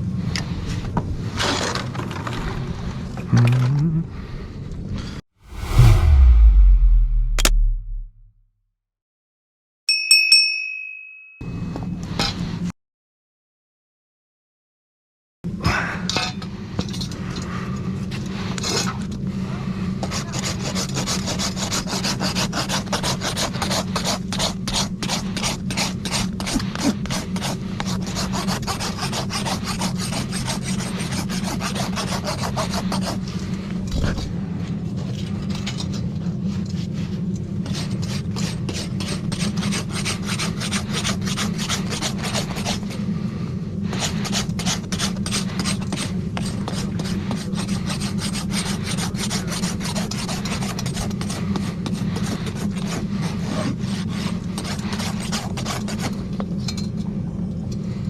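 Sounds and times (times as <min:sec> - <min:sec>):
steady low hum: 0:05.5 - 0:08.3
rasp filing a hoof: 0:37.6 - 0:42.8, 0:44.0 - 0:51.3, 0:52.1 - 0:56.2.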